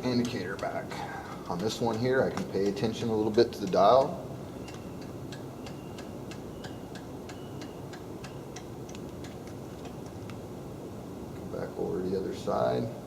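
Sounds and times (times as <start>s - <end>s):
light even ticking: 0.0s - 10.4s.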